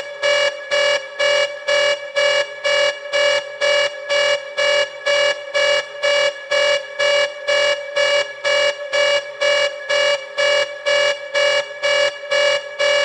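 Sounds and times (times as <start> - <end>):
high-pitched buzzing alarm: 0.0 - 13.0.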